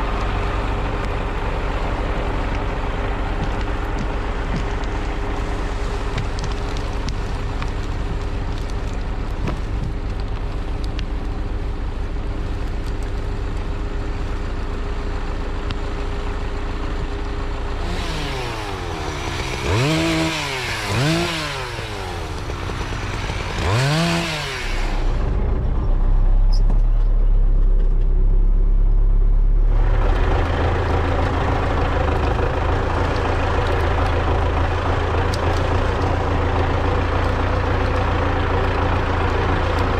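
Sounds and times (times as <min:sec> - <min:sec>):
deep drone: 0:00.0 - 0:39.9
diesel engine running: 0:00.0 - 0:39.9
engine revving: 0:17.8 - 0:25.9, 0:29.5 - 0:39.9.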